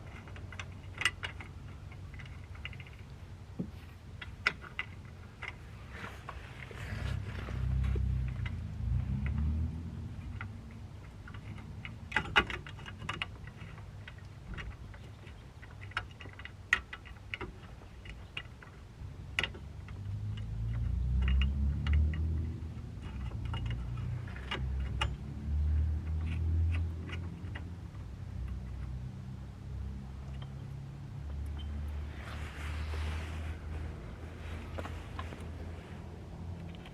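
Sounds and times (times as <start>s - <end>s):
low rumble: 29.8s - 36.8s.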